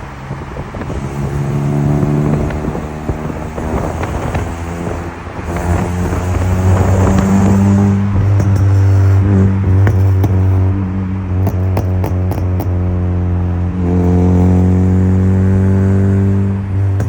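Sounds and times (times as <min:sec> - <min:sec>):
car engine and exhaust: 0:00.0 - 0:17.0
sharp exhaust cracks: 0:00.5 - 0:17.0.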